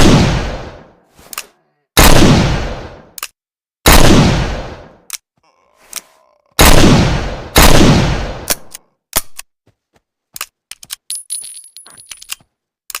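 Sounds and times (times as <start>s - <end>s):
sharp metallic clicks: 3.0s - 3.4s.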